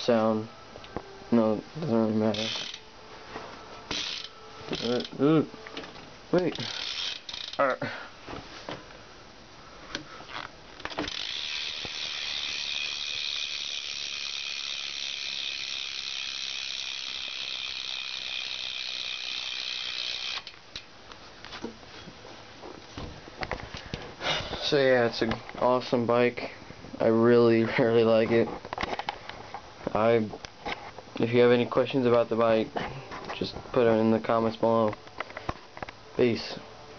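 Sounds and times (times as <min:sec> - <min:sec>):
bike hub clicking buzz: 0:02.3 - 0:02.9, 0:03.9 - 0:07.8, 0:10.3 - 0:20.9.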